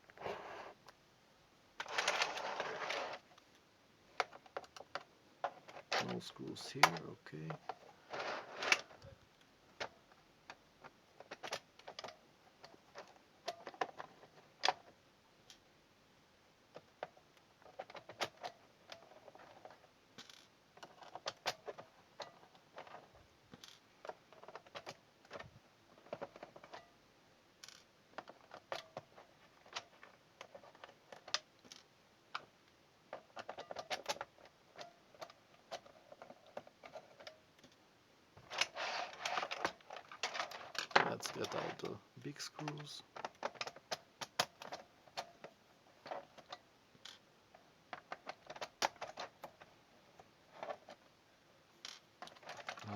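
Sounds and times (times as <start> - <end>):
plastic clatter: 16.7 - 26.9, 33.1 - 37.8, 38.4 - 42.0, 42.6 - 51.1, 51.8 - 52.9.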